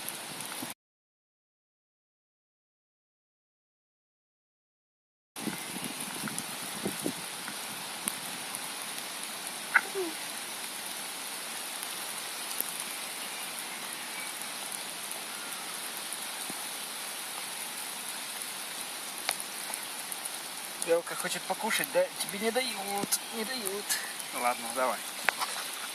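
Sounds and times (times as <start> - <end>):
steady rain falling: 0.0 - 0.8, 5.4 - 25.9
raindrop ticks: 5.4 - 11.0, 13.8 - 16.7, 18.3 - 25.9.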